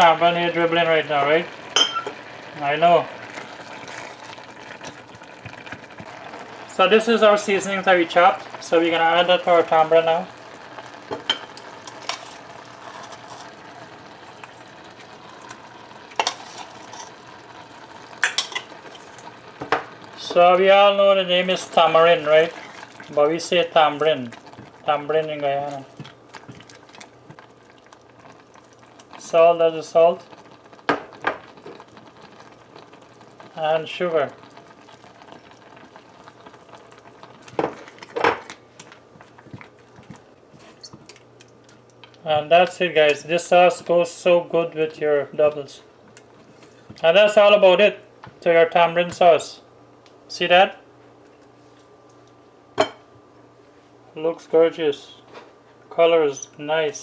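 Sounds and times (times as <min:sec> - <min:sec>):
sauce simmering with hiss: 0:00.0 - 0:57.0
spoon scraping in a pot: 0:11.2 - 0:14.6, 0:16.2 - 0:17.2.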